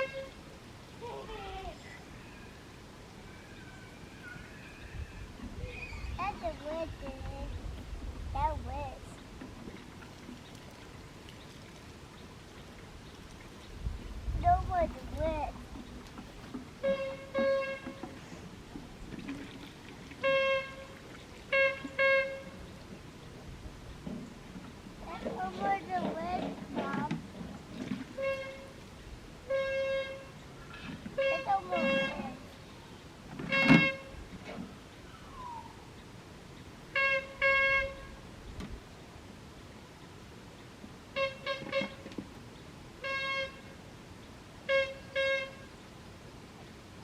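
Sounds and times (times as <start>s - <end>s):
horn honking: 0.0s - 0.4s, 16.8s - 18.2s, 20.2s - 22.7s, 28.1s - 28.8s, 29.4s - 32.5s, 33.4s - 34.3s, 36.9s - 38.3s, 41.2s - 42.1s, 43.0s - 43.8s, 44.7s - 45.7s.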